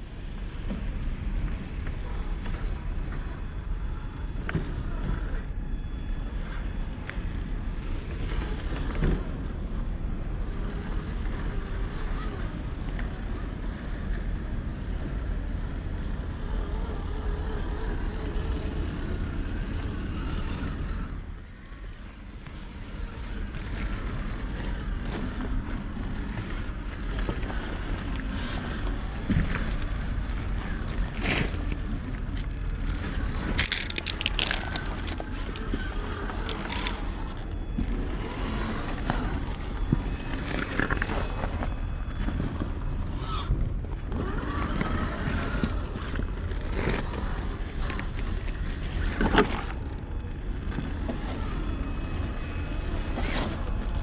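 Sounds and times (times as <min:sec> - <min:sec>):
wind: 0:00.0 - 0:54.0
small electric motor: 0:02.0 - 0:54.0
toy truck clicking on rock: 0:26.2 - 0:41.6.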